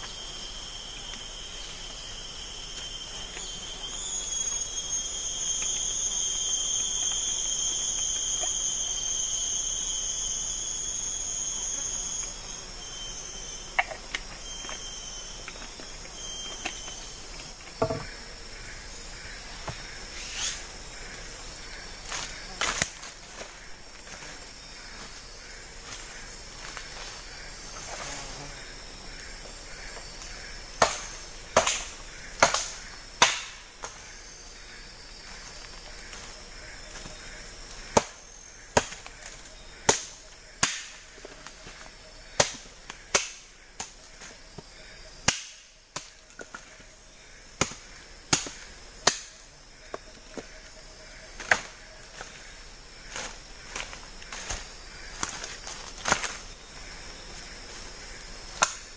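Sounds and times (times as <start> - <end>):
high hiss: 0.0 - 41.0
insect drone: 0.0 - 58.9.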